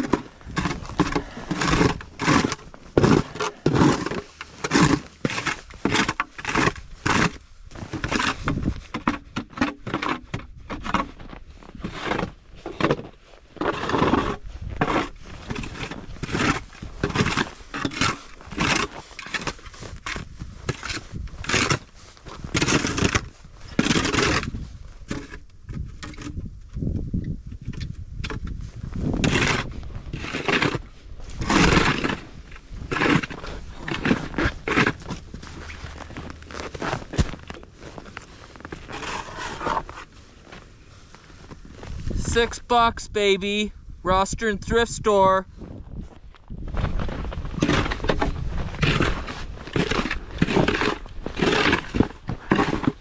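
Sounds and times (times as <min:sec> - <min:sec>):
snow shovel scraping snow: 0:00.0 - 0:08.5, 0:29.2 - 0:42.1, 0:47.4 - 0:53.0.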